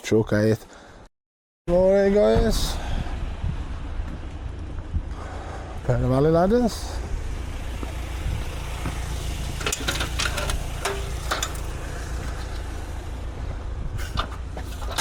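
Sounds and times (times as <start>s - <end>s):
engine idling: 2.4s - 15.0s
sharp clicks and knocks: 8.9s - 11.8s.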